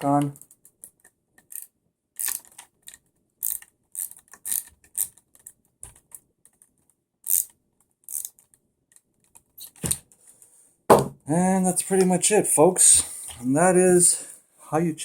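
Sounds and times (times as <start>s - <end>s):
small parts clicking and rattling: 0.2s - 9.6s.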